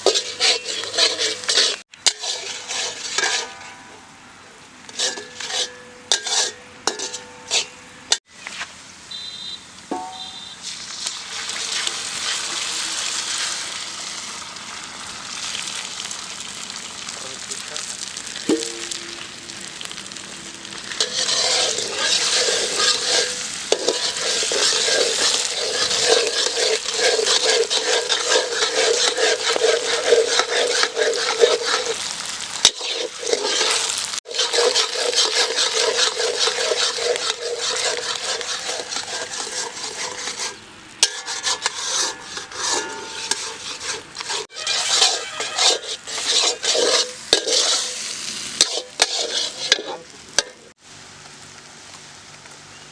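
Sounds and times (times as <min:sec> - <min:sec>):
egg sizzling in a pan: 0:00.0 - 0:03.6, 0:10.2 - 0:52.6
spatula scraping a pan: 0:00.0 - 0:04.0, 0:04.9 - 0:08.2, 0:10.6 - 0:13.6, 0:20.9 - 0:50.6.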